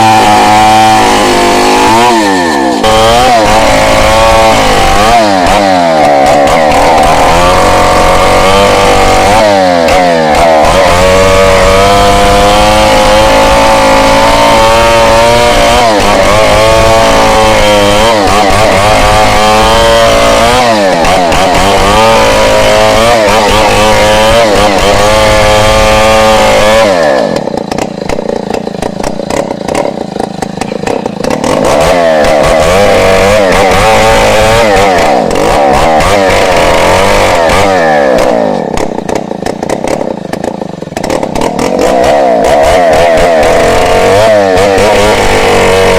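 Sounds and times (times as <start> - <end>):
chainsaw ripping a log: 0.0 - 45.9.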